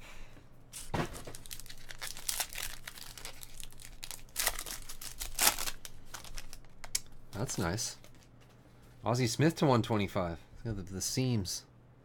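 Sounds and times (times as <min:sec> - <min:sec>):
wrapper crinkling and tearing: 0:01.2 - 0:08.2.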